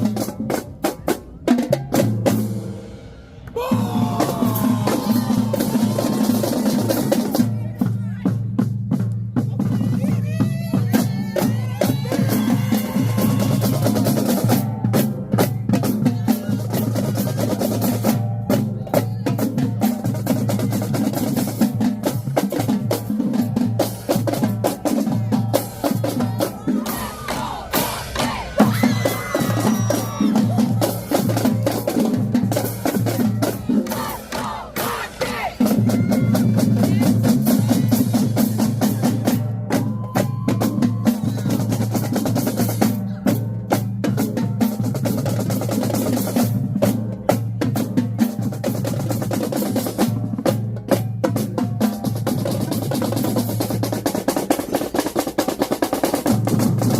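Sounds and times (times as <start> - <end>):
bass drums: 0.0 - 54.7
snare drums: 0.0 - 56.9
tenor drums: 0.0 - 56.9
drum rimshots: 22.1 - 42.8.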